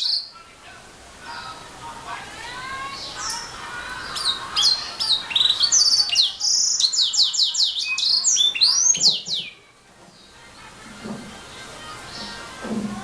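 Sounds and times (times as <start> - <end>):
canary singing trills: 0.0 - 0.4, 2.5 - 10.7.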